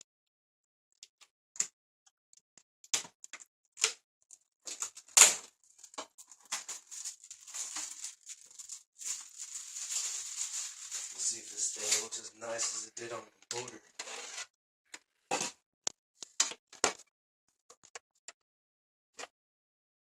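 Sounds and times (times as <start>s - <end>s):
plastic packaging rustling: 4.7s - 12.8s.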